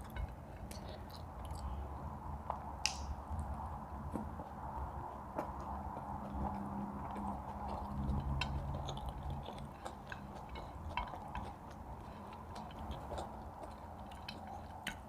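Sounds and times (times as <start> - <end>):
chewing: 0.0 - 2.7, 3.4 - 15.0
low steady hum: 0.0 - 15.0.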